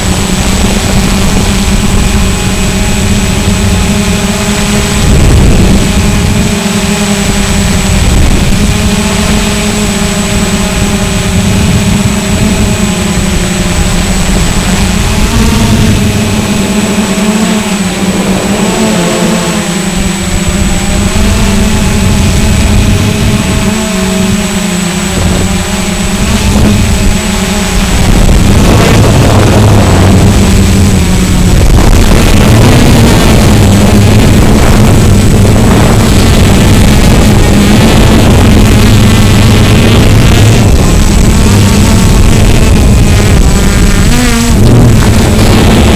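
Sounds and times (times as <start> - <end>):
wind rumbling: 0.0 - 6.6, 7.6 - 9.3, 25.0 - 45.9
drone propellers whirring: 0.0 - 45.9
quadcopter motors buzzing: 0.0 - 45.9.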